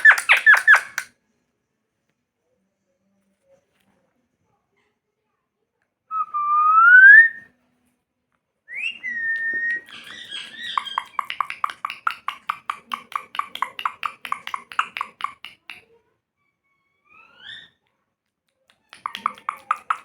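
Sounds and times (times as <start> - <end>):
parrot chattering: 0.0 - 1.1, 8.9 - 15.8, 18.8 - 20.0
parrot whistling: 0.0 - 1.1, 6.1 - 7.4, 8.7 - 15.7, 19.0 - 20.0.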